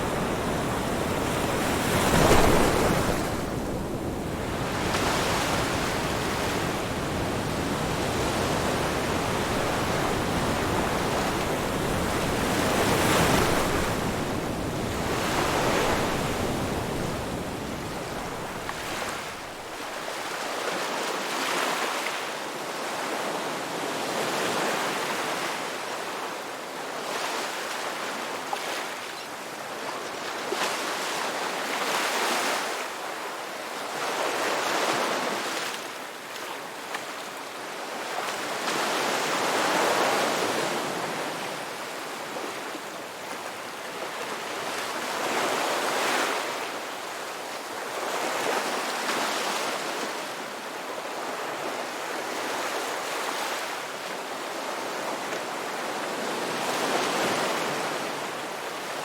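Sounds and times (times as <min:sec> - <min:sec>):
waves breaking: 0:00.0 - 0:20.0.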